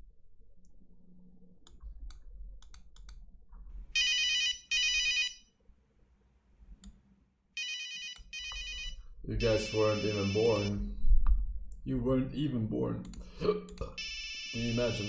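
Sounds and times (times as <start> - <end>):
faint clicks: 1.6 - 3.2, 13.0 - 14.0
mobile phone ringtone trill: 4.0 - 5.4, 7.6 - 10.7, 14.0 - 15.0.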